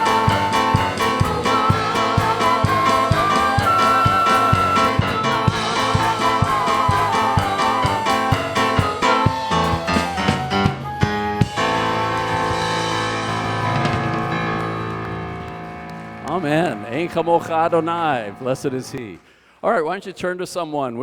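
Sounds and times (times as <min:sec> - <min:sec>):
people singing: 0:00.0 - 0:09.9, 0:16.2 - 0:19.2
keyboard: 0:00.0 - 0:19.2
steady drum beat: 0:00.0 - 0:19.2
worship band playing: 0:00.0 - 0:19.6.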